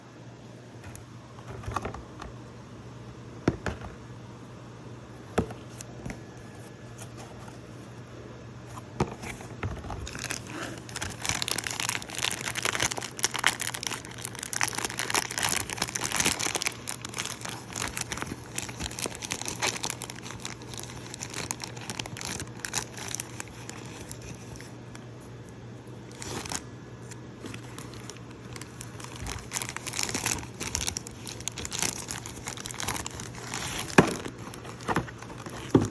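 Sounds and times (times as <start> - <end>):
packaging crinkling and tearing: 10.0 - 25.1, 26.0 - 35.9.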